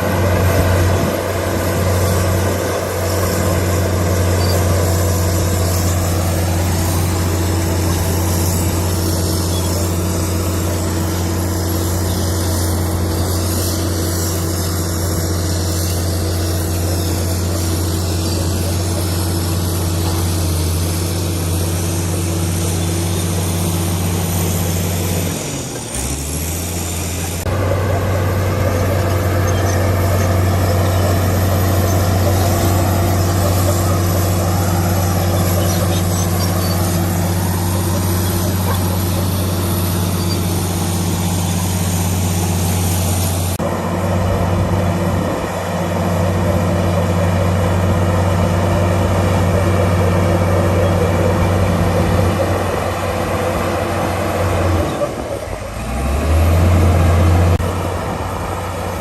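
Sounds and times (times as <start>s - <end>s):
bulldozer diesel engine running: 0.0s - 59.0s.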